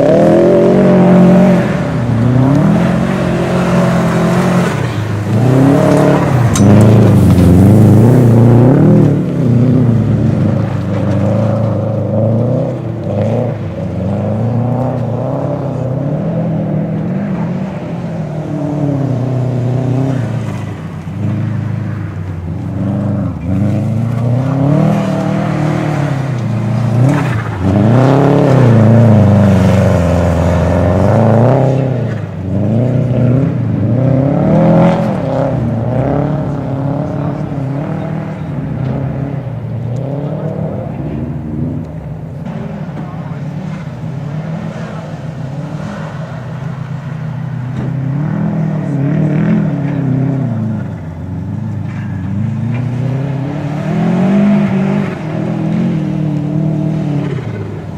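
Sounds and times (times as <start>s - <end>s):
car engine revving hard: 0.0s - 57.9s.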